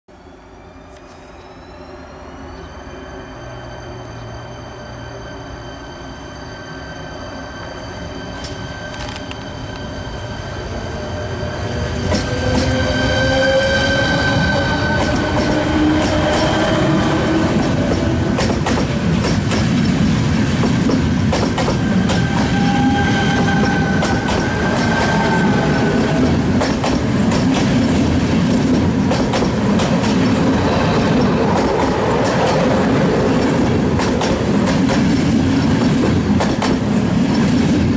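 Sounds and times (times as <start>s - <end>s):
train wheel noise: 7.6s - 37.9s.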